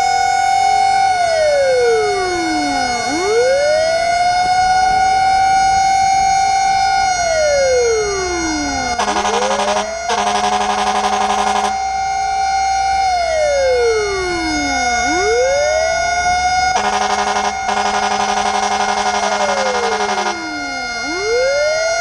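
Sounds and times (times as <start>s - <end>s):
fire truck siren wailing: 0.0s - 22.0s
rasping horn blasts: 8.7s - 13.0s, 16.6s - 21.3s.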